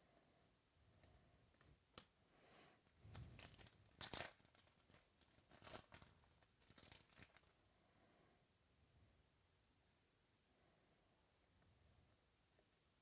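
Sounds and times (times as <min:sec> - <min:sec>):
wrappers crinkling: 0:03.0 - 0:07.5
trading card packs tearing: 0:03.1 - 0:07.5.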